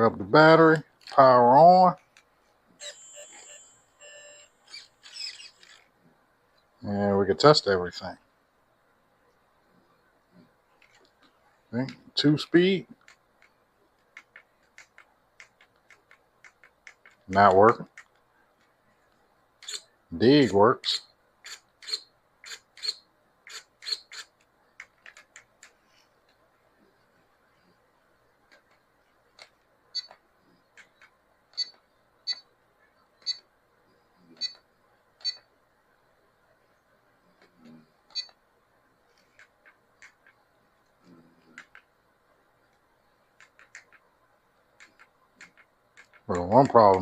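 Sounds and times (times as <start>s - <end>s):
sharp mechanical clicks: 4.1s - 5.9s, 12.9s - 18.2s, 41.4s - 41.9s, 43.3s - 44.1s, 44.8s - 47.0s.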